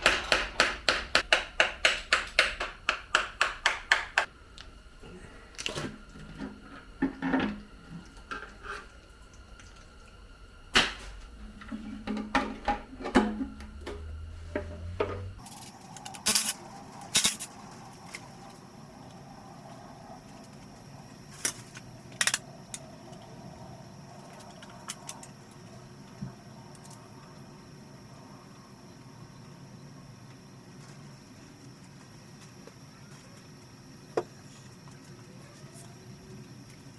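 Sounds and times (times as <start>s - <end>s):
metal tools and parts clinking: 15.1s - 17.5s.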